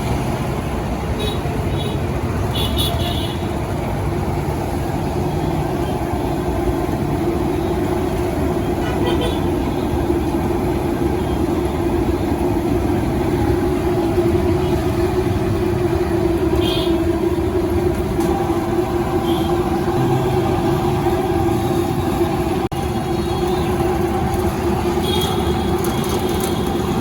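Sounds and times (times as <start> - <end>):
roadside traffic noise: 0.0 - 27.0
vehicle horn toots: 8.8 - 9.5, 16.6 - 17.1, 25.0 - 26.8.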